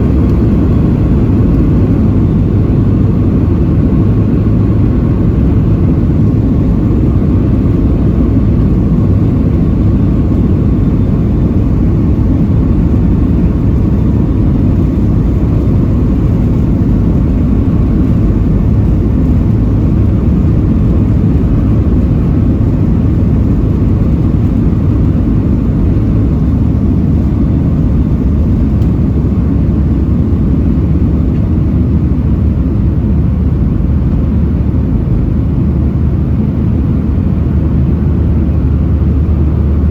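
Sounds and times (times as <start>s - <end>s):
aircraft cabin engine rumble: 0.0s - 39.9s
faint hum: 0.0s - 39.9s.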